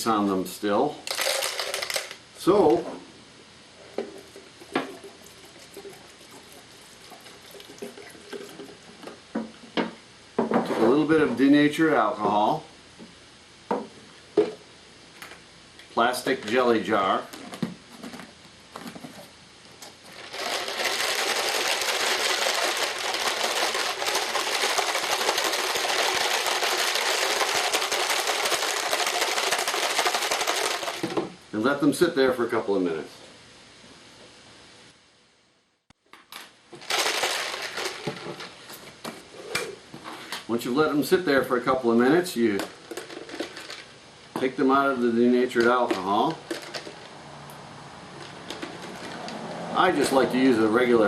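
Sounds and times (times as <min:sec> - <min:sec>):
quiet hiss: 0:00.0 - 0:24.6
plastic pieces rattling in a jar: 0:01.0 - 0:02.2, 0:20.1 - 0:31.2, 0:36.8 - 0:38.6, 0:42.5 - 0:43.9, 0:45.8 - 0:47.1.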